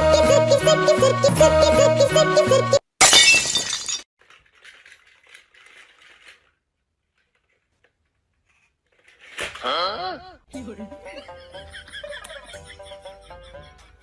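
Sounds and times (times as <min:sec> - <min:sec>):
glass shattering: 0:03.0 - 0:04.1.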